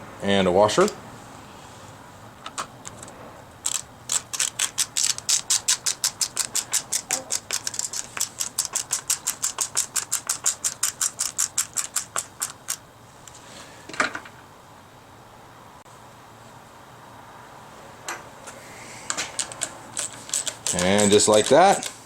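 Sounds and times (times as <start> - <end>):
hand ratchet clicking: 3.6 - 12.8, 19.1 - 22.0.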